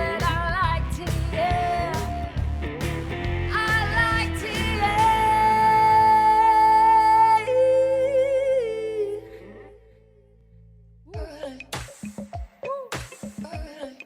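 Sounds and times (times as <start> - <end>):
woman singing wordless notes: 0.0 - 2.4, 3.5 - 9.8
instrumental backing: 0.0 - 6.6.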